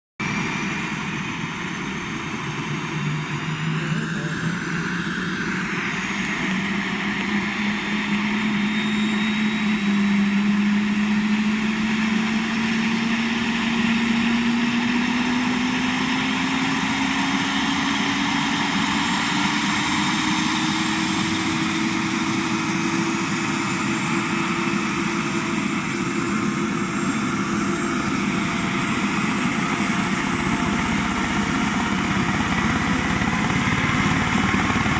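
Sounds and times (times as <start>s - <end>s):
helicopter engine spooling up: 0.2s - 34.9s
high whine: 0.2s - 34.9s.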